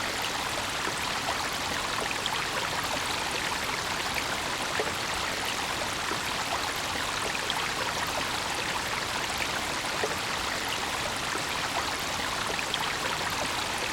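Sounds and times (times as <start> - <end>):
brook running over stones: 0.0 - 8.4.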